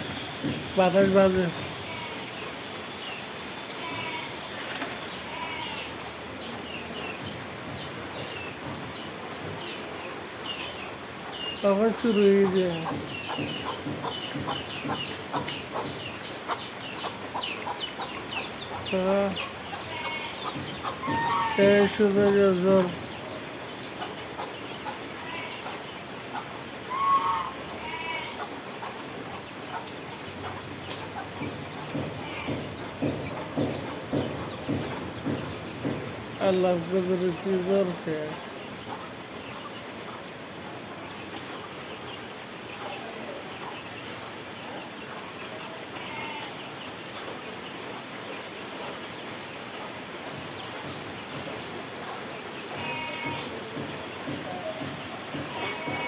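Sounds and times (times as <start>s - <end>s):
steady rain falling: 0.0s - 56.0s
farm fowl calling: 12.0s - 23.0s, 24.4s - 28.9s.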